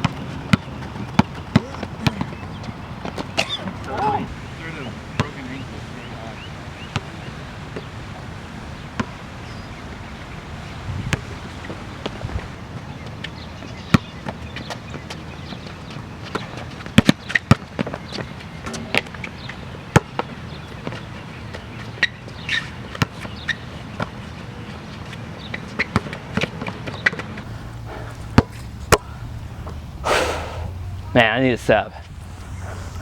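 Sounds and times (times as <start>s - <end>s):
basketball bouncing: 0.0s - 4.1s.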